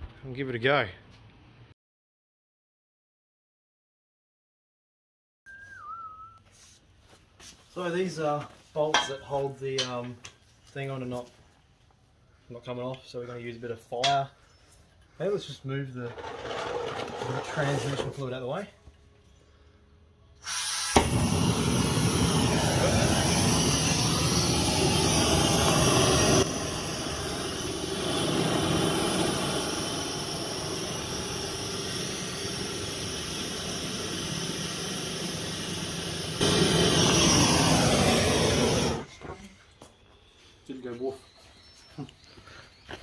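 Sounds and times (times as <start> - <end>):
gas torch ignition click: 20.4 - 39.0
gas torch hissing: 20.4 - 39.4.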